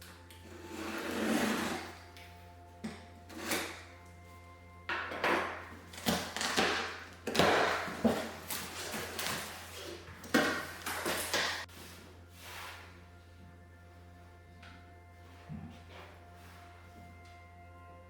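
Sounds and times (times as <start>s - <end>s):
quiet background music: 0.0s - 18.0s
cardboard scraping and knocking: 5.2s - 11.7s.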